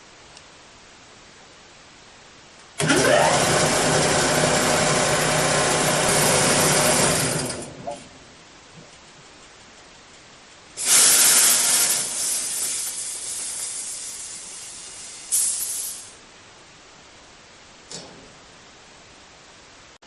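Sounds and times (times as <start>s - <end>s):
compressed air hissing: 10.8s - 16.2s.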